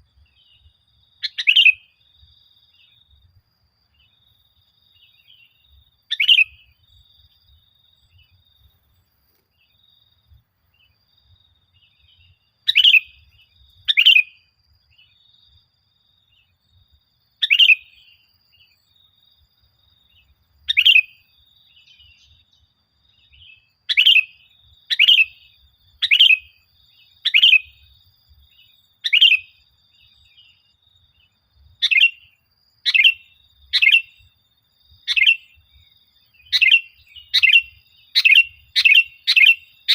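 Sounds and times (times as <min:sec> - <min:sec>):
bird calling: 0:00.0 - 0:02.0, 0:06.1 - 0:06.8, 0:11.9 - 0:14.5, 0:17.4 - 0:18.2, 0:20.7 - 0:22.7, 0:23.3 - 0:27.8, 0:29.0 - 0:29.6, 0:31.8 - 0:34.3, 0:35.0 - 0:35.7, 0:36.3 - 0:39.9.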